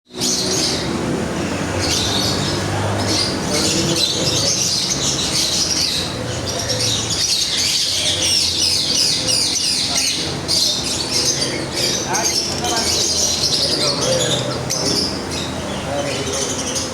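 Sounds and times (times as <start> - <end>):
birds chirping and squawking: 0.1 - 16.9.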